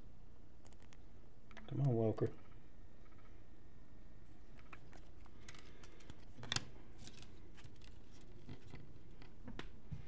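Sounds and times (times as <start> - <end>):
cards being shuffled: 4.5 - 9.7.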